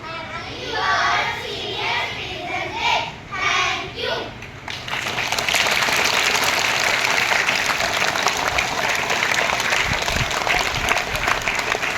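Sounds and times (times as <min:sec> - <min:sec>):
audience applauding: 0:04.7 - 0:11.9.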